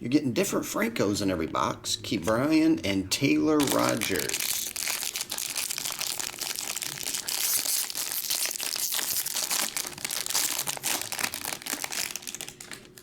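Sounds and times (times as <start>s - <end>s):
card wrappers crinkling and tearing: 3.6s - 13.0s.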